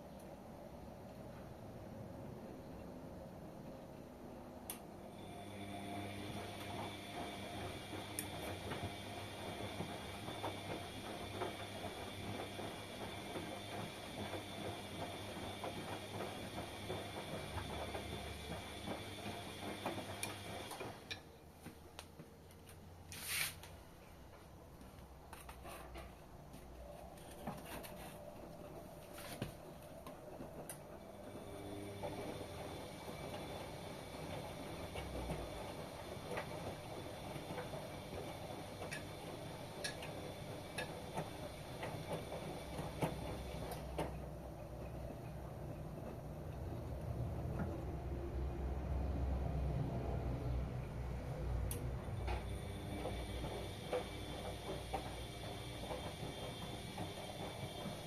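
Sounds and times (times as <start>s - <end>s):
washing machine humming: 0.0s - 58.0s
short hiss: 23.1s - 23.6s.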